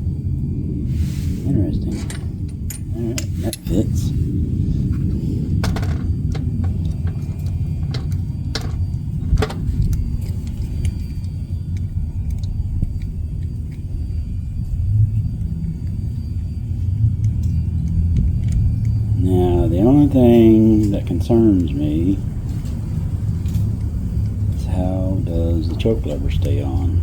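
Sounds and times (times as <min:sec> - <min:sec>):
steady low rumble: 0:00.0 - 0:27.0
small parts clicking and knocking: 0:05.5 - 0:14.3, 0:15.2 - 0:19.1.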